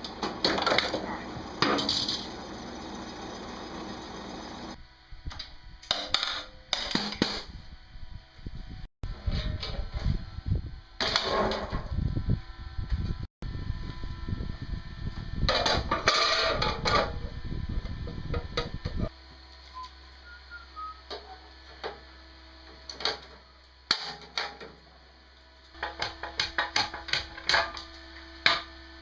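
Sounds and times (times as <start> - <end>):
low hum: 0.6 - 5.7.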